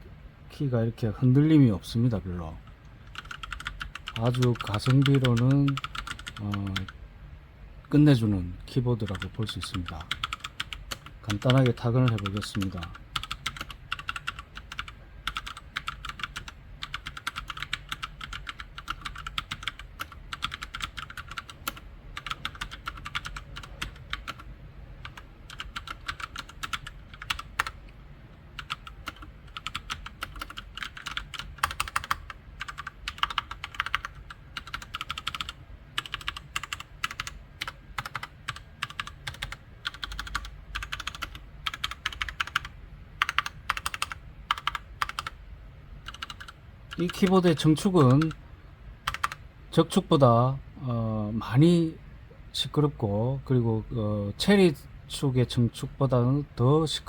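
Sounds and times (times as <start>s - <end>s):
mechanical keyboard typing: 3.1s - 7.0s, 9.0s - 27.8s, 28.6s - 45.4s, 46.0s - 47.4s, 48.0s - 48.4s, 49.0s - 49.4s.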